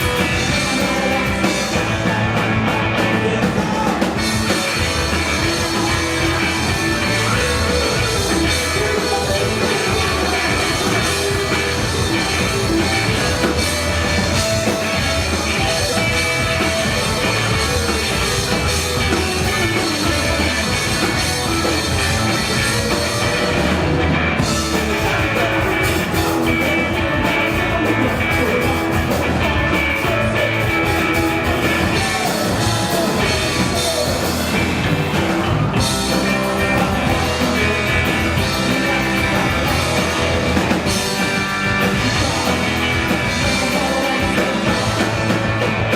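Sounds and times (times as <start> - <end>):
live rock band playing: 0.0 - 45.9.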